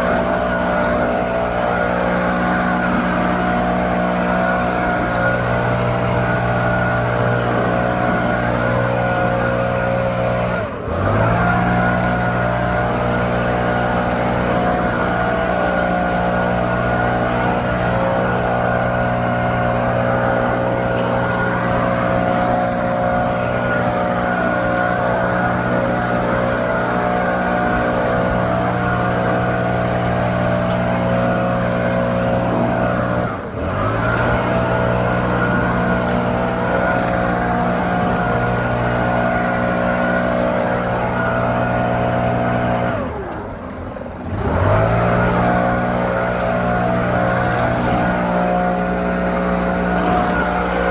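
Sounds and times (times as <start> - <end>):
leaf blower engine revving: 0.0 - 50.9.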